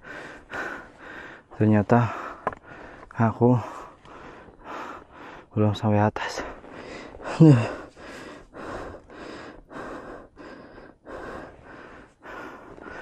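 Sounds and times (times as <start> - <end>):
heavy rapid breathing: 0.0 - 13.0
voiced sigh: 6.4 - 13.0.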